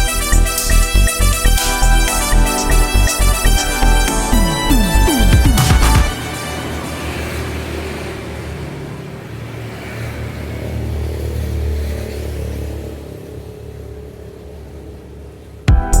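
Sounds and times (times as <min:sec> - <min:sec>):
loud electronic music: 0:00.0 - 0:08.1, 0:15.7 - 0:16.0.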